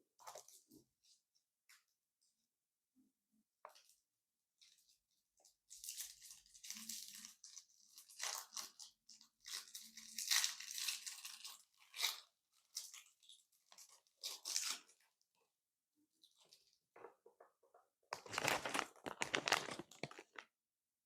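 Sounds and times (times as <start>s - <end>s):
slime squelching and crunching: 18.2s - 20.4s.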